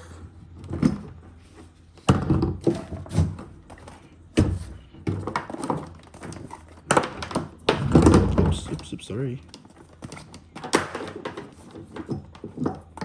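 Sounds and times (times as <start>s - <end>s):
hollow plastic knocks and clunks: 2.0s - 8.9s.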